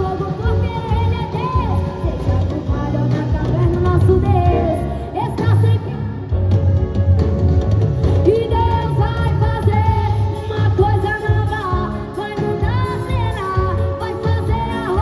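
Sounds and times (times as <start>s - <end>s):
drums: 0.0s - 15.0s
keyboard: 0.0s - 15.0s
pulsing bass line: 0.0s - 15.0s
woman singing gospel: 8.2s - 15.0s.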